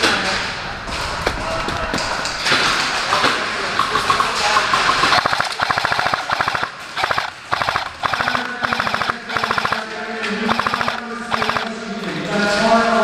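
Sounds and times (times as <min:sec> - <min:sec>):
airsoft gun full-auto firing: 0:05.1 - 0:11.7.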